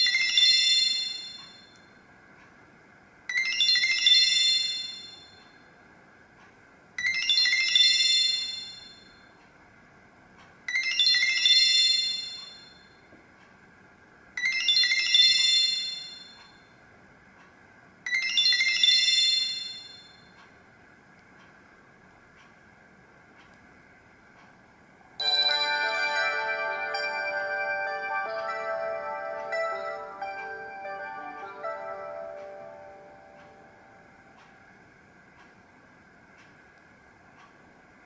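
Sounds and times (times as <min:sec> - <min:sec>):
mobile phone chiming tone: 0:00.0 - 0:01.7, 0:03.3 - 0:05.4, 0:07.0 - 0:09.1, 0:10.7 - 0:12.8, 0:14.4 - 0:16.4, 0:18.1 - 0:20.2, 0:25.2 - 0:33.9.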